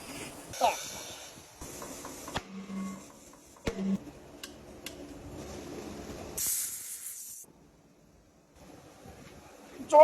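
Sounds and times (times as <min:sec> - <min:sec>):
air hissing: 0:06.4 - 0:07.4.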